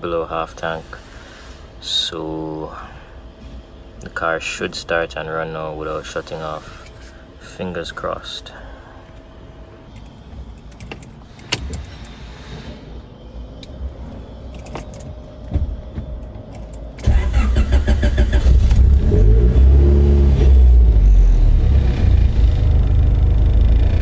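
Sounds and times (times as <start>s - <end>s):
keys jangling: 9.9s - 12.7s, 13.4s - 17.3s, 18.7s - 22.4s
car engine running: 15.5s - 24.0s
starter cranking car engine: 17.0s - 24.0s.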